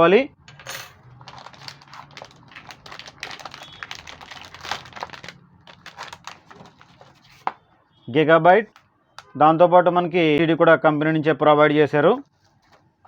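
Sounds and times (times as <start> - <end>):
packaging rustling: 1.2 - 7.4.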